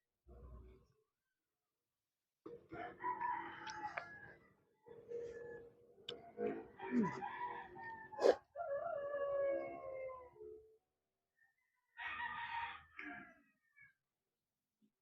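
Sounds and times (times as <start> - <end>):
rooster crowing: 2.8 - 4.4, 6.8 - 10.5, 12.0 - 13.4.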